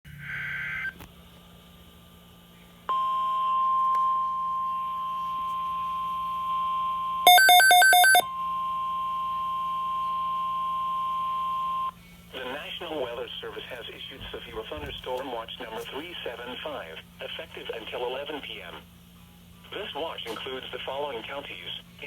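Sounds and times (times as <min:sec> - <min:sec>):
rapid electronic beeps: 0:07.3 - 0:08.2
steady alert tone: 0:07.3 - 0:08.2.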